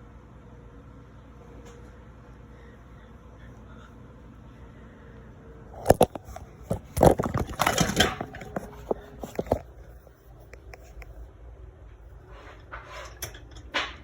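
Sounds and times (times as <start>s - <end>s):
kitchen knocks and clicks: 5.8s - 9.8s, 12.6s - 14.0s.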